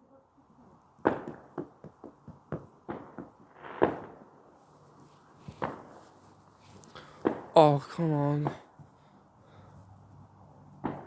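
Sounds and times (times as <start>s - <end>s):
fireworks popping: 1.0s - 4.4s, 5.5s - 6.0s.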